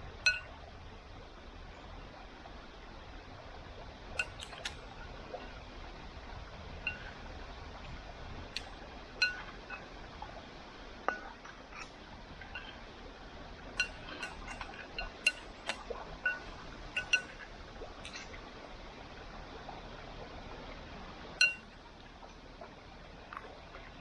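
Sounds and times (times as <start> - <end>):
utensil clinking against cookware: 13.8 - 17.4, 21.4 - 21.6.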